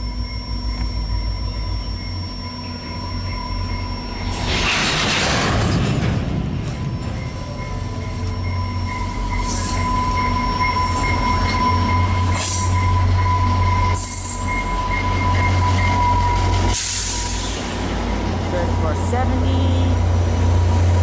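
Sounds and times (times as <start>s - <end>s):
train wheels and brakes squealing: 0.0s - 19.0s
locomotive low drone: 0.0s - 21.0s.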